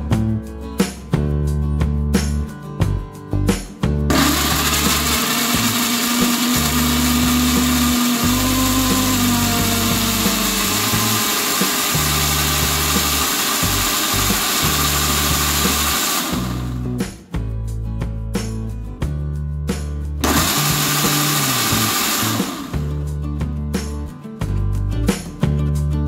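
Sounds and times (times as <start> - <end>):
blender motor grinding: 4.1 - 16.8, 20.2 - 23.0.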